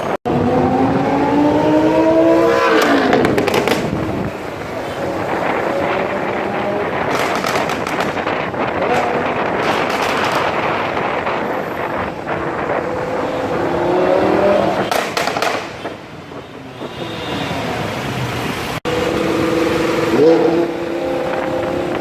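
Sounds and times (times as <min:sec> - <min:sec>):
exhaust crackles and pops: 0:02.7 - 0:16.1
loud sports car exhaust: 0:18.8 - 0:22.0.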